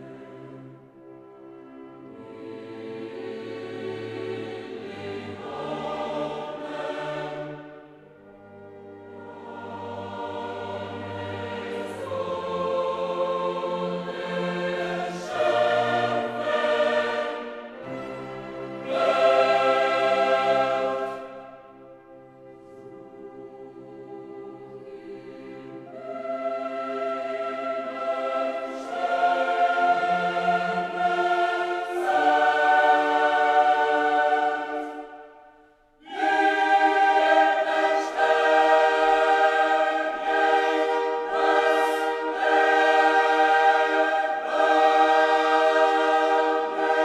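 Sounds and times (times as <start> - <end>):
choir singing with orchestra: 0.0 - 47.0.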